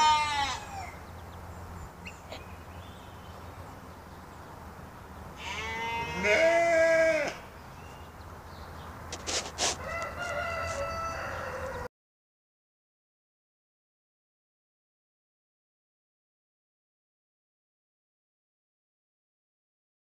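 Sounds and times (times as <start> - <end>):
farm animal bleating: 0.0 - 1.0, 5.3 - 7.5.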